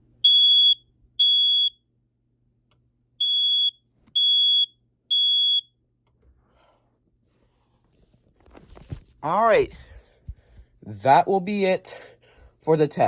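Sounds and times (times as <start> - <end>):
smoke alarm beeps: 0.2 - 1.9, 3.2 - 5.8.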